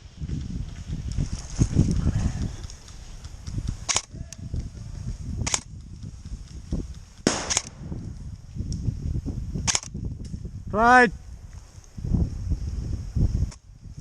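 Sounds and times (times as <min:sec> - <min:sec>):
airsoft gun firing single shots: 0:07.2 - 0:07.9.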